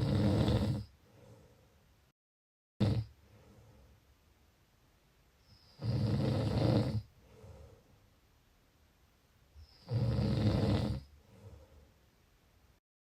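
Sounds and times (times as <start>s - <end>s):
person snoring: 0.0s - 0.9s, 2.8s - 3.2s, 5.6s - 7.1s, 9.6s - 11.6s
soft breath: 0.8s - 2.1s, 3.2s - 4.2s, 7.1s - 8.2s, 11.1s - 12.2s.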